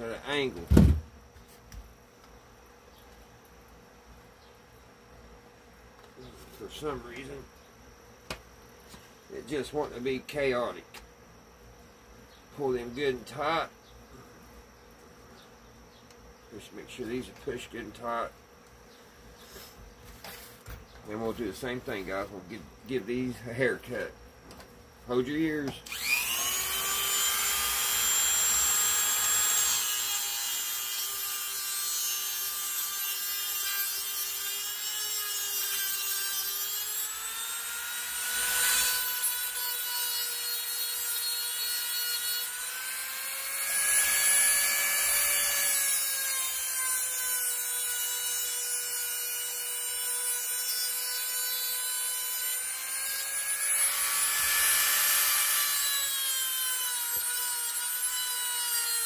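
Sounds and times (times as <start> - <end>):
power tool whining while cutting: 25.9 - 59.0.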